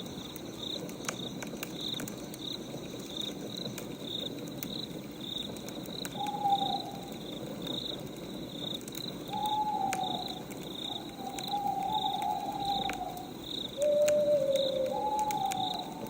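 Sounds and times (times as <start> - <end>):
crickets chirping: 0.0 - 16.0
wood fire crackling: 0.0 - 16.0
owl hooting: 6.1 - 7.2, 9.3 - 16.0.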